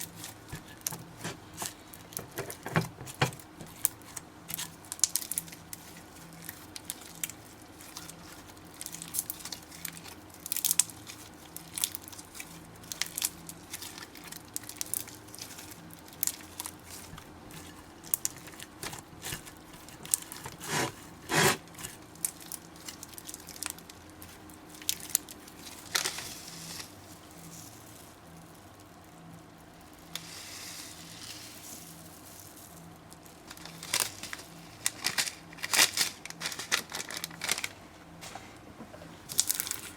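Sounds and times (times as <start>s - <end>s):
slime crackling and popping: 0.0s - 37.7s.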